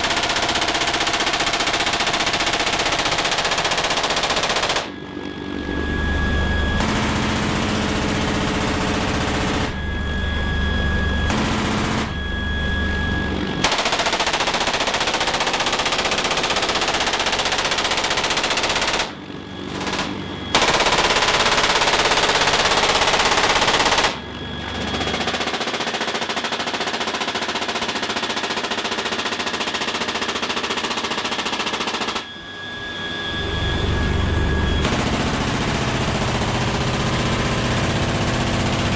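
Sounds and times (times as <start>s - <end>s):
machine gun firing bursts: 0.0s - 5.0s, 6.8s - 9.7s, 11.3s - 12.2s, 13.6s - 24.2s, 24.8s - 32.3s, 34.8s - 38.9s
low rotor hum: 0.0s - 25.9s, 32.2s - 38.9s
helicopter engine whine: 0.0s - 38.9s.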